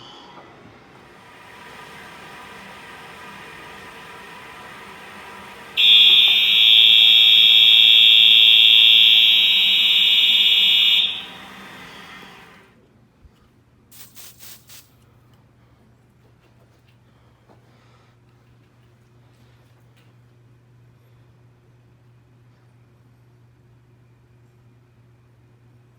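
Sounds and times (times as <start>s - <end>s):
fire alarm horn tone: 5.0s - 12.7s.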